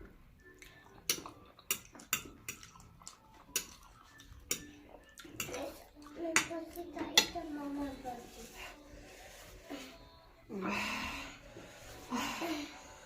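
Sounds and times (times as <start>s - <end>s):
utensils clicking against a bowl: 1.0s - 5.7s.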